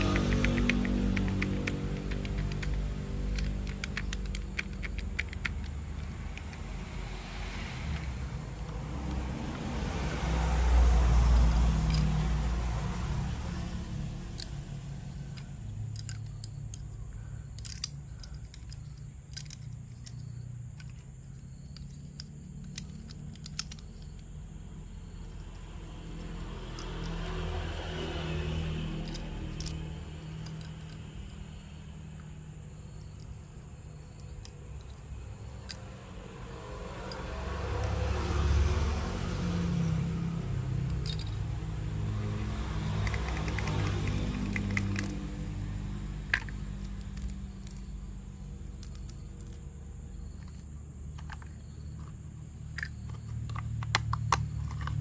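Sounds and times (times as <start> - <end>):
plastic toy parts clicking: 0.0 - 6.7, 11.8 - 12.1, 14.3 - 24.3, 25.2 - 27.4, 29.0 - 31.0, 33.0 - 35.9, 40.8 - 41.4, 43.0 - 45.2, 46.2 - 47.9, 48.6 - 49.6, 50.3 - 55.0.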